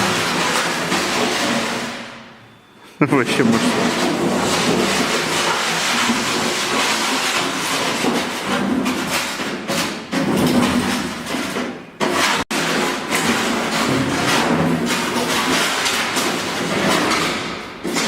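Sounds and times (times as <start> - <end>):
loud rattling and scraping: 0.0 - 18.0
knocks: 3.6 - 12.4.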